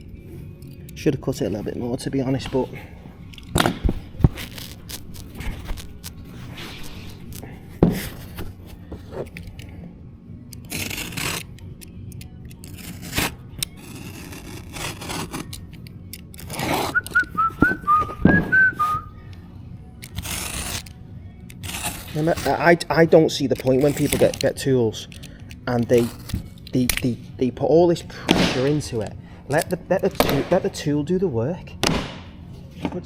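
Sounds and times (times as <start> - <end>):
knife scraping carpet tile: 3.6 - 9.6, 10.6 - 11.6, 12.6 - 15.7, 16.4 - 17.8, 20.0 - 20.9, 21.6 - 22.7, 23.4 - 26.8
person whistling: 16.6 - 19.2.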